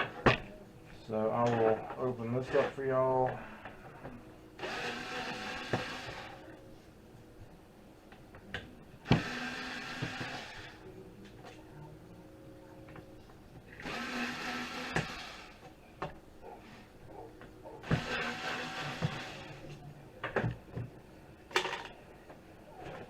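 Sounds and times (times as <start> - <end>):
electric screwdriver whirring: 4.6 - 6.4, 9.1 - 10.8, 13.8 - 15.6, 17.9 - 19.5.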